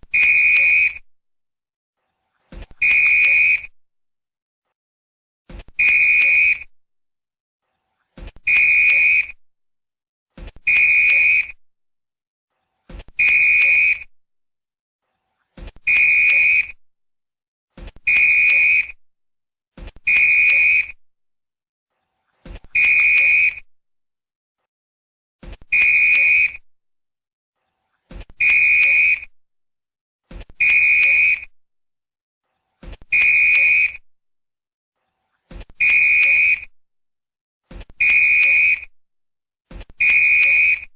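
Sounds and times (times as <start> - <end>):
referee's whistle blasts: 0.0 - 1.0, 2.7 - 3.7, 5.8 - 6.7, 8.4 - 9.4, 10.6 - 11.6, 13.2 - 14.1, 15.8 - 16.8, 18.0 - 19.0, 20.0 - 21.0, 22.6 - 23.7, 25.7 - 26.6, 28.4 - 29.3, 30.6 - 31.5, 33.1 - 34.0, 35.8 - 36.7, 38.0 - 38.9, 40.0 - 40.9.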